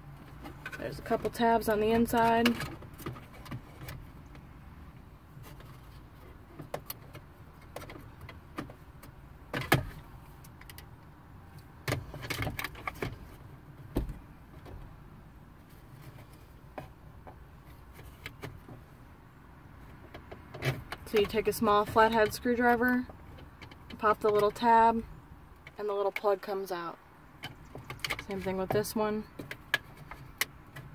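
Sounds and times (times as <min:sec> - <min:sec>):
dull thump: 0:13.9 - 0:14.9.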